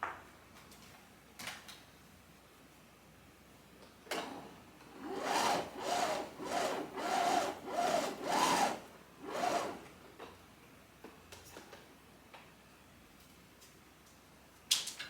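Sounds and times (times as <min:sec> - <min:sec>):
rhythmic rubbing strokes: 0:05.0 - 0:09.8.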